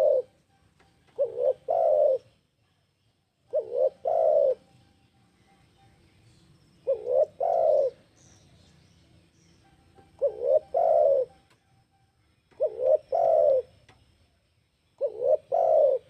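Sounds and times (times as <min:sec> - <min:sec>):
dove cooing: 0:00.0 - 0:00.3, 0:01.1 - 0:02.4, 0:03.5 - 0:04.7, 0:06.8 - 0:08.0, 0:10.0 - 0:11.4, 0:12.5 - 0:13.8, 0:15.0 - 0:16.0.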